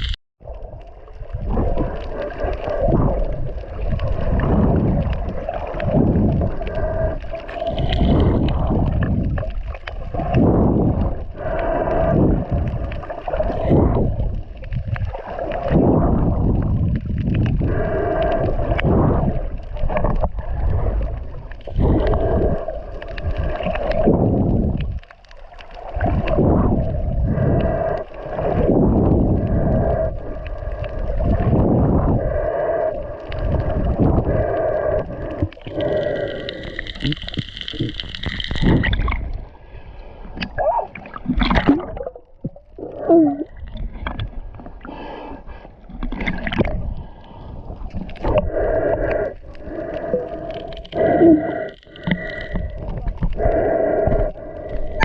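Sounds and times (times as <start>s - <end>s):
muffled underwater water rushing: 0.0s - 55.0s.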